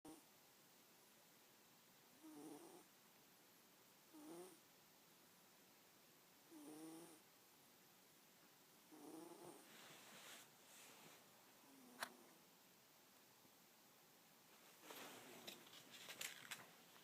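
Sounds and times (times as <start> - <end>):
cat snoring: 2.2 - 2.9, 4.1 - 4.6, 6.5 - 7.2, 8.9 - 9.8.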